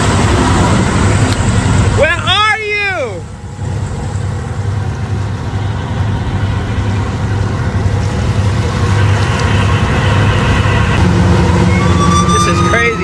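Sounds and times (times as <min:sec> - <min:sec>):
boat engine humming: 0:00.0 - 0:13.0
high whine: 0:03.2 - 0:13.0.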